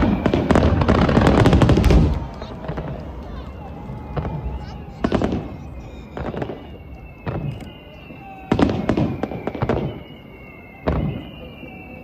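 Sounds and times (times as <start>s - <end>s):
firework shells booming: 0.0s - 3.4s, 4.0s - 11.4s
rapid run of firework bangs: 0.0s - 12.0s
thin whistling tone: 3.3s - 12.0s.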